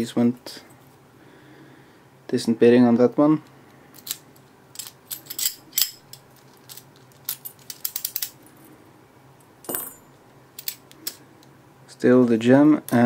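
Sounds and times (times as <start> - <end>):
padlock and keys clinking: 4.0 - 8.4.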